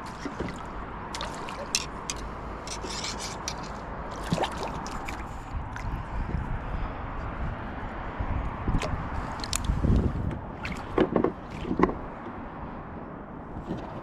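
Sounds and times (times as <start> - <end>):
water trickling and dripping: 0.0 - 6.1
rubbing and scraping of tackle: 1.2 - 5.4.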